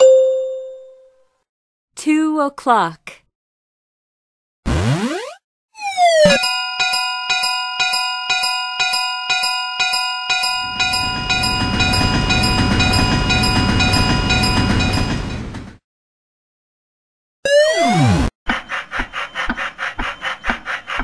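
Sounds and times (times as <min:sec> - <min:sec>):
railroad crossing bell clanging: 0:06.4 - 0:15.6
train rumbling: 0:10.6 - 0:15.8.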